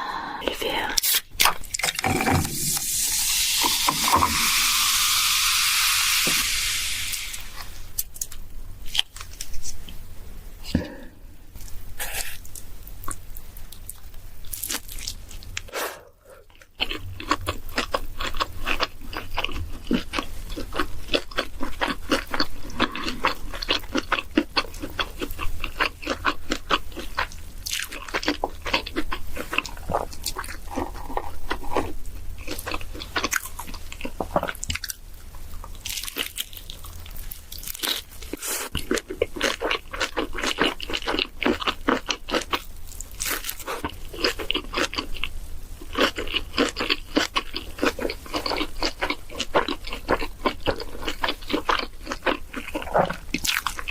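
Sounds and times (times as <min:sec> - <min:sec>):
person chewing crunchy food: 0:11.6 - 0:53.9.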